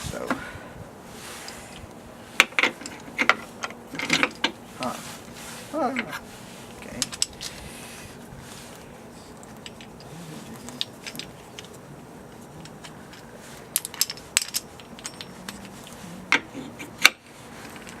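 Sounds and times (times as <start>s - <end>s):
steady background hiss: 0.0s - 18.0s
small hard objects clattering: 9.6s - 16.5s.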